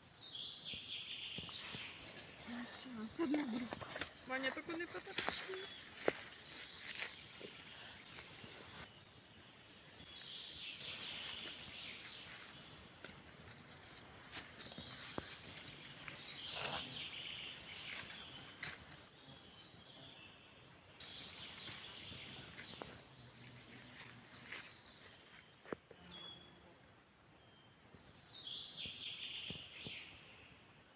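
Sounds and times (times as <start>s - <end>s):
small birds chirping and singing: 0.0s - 26.7s, 27.3s - 30.9s
steady outdoor hiss: 0.0s - 30.9s.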